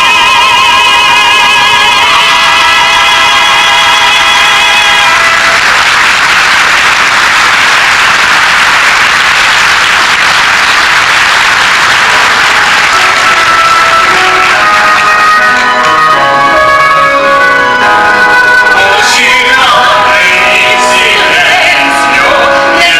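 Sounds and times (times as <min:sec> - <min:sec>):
audience applauding: 0:00.0 - 0:22.9
melodic music: 0:12.0 - 0:22.9.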